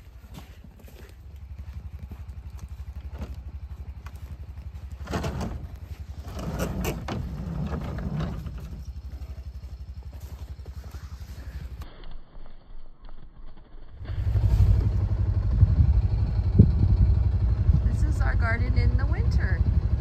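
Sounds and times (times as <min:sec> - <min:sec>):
motor pulsing low rumble: 0:00.0 - 0:20.0
scraping or crunching noises: 0:04.1 - 0:15.0.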